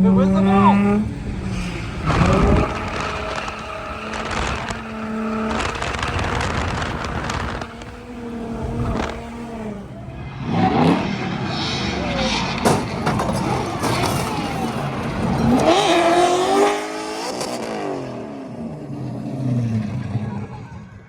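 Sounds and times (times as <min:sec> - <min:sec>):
tyres squealing and skidding: 0:00.0 - 0:17.5
car engine revving high: 0:00.0 - 0:20.1.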